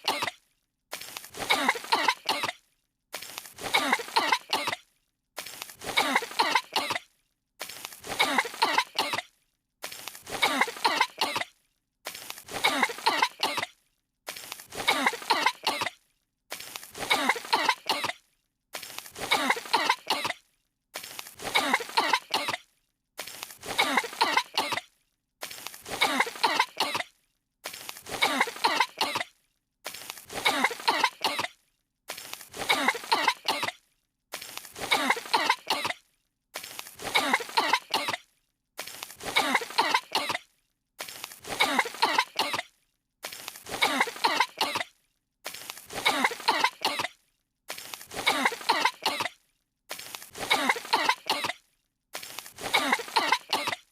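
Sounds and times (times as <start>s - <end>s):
cartoon girls coughing: 0.0s - 0.4s, 1.4s - 2.7s, 3.6s - 4.9s, 5.8s - 7.1s, 8.0s - 9.3s, 10.3s - 11.6s, 12.5s - 13.7s, 14.7s - 16.0s, 17.0s - 18.3s, 19.2s - 20.4s, 21.4s - 22.7s, 23.6s - 24.9s, 25.9s - 27.1s, 28.1s - 29.3s, 30.3s - 31.6s, 32.5s - 33.8s, 34.8s - 36.0s, 37.0s - 38.2s, 39.2s - 40.4s, 41.4s - 42.7s, 43.7s - 44.9s, 45.9s - 47.2s, 48.1s - 49.4s, 50.4s - 51.6s, 52.6s - 53.9s.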